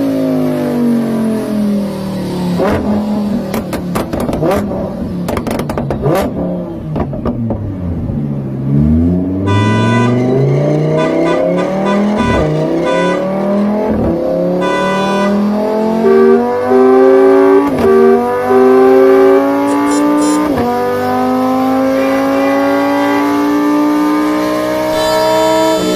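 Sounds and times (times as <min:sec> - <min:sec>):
car engine accelerating: 0:00.0 - 0:25.9
car horn blasts: 0:09.4 - 0:15.6, 0:19.5 - 0:20.7, 0:24.8 - 0:25.9.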